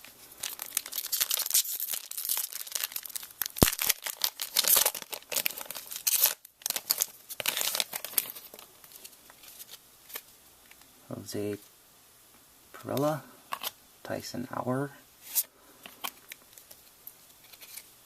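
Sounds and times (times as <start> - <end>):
wrapper tearing and crinkling: 0.4 - 10.2, 17.4 - 17.9.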